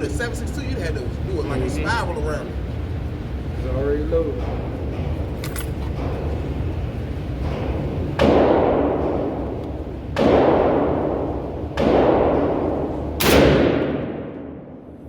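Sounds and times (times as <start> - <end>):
shotgun shots with echo: 8.2 - 9.5, 10.1 - 15.0.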